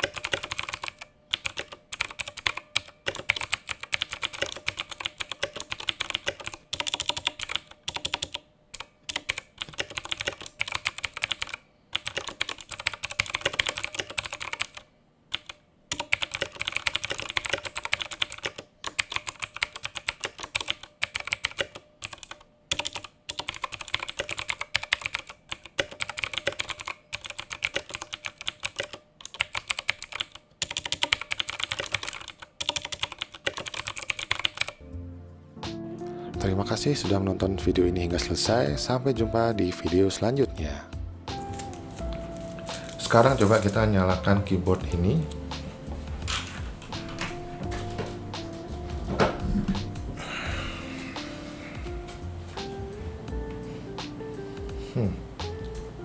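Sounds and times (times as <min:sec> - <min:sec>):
mechanical keyboard typing: 0:00.0 - 0:34.8.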